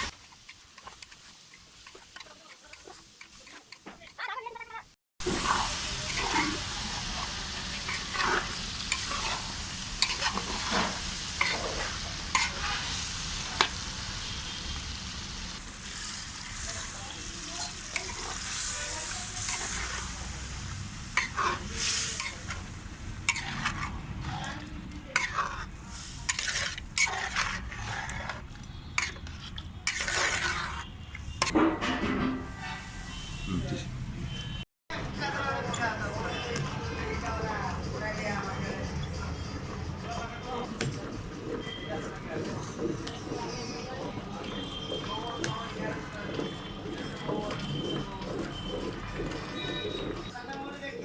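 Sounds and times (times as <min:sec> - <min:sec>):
spoon scraping a pot: 0:00.0 - 0:04.2, 0:05.3 - 0:13.8, 0:17.4 - 0:34.4, 0:40.8 - 0:50.3
curry sizzling in a pot: 0:00.0 - 0:31.6, 0:35.2 - 0:50.4.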